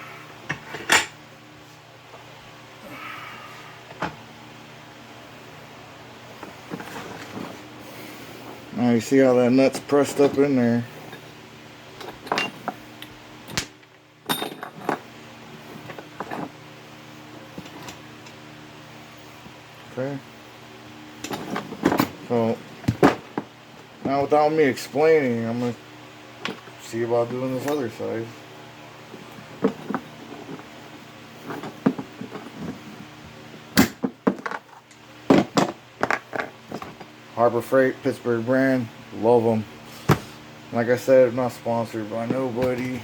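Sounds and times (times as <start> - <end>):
steady low hum: 0.0 - 43.0
tools and metal parts clicking: 14.3 - 15.0.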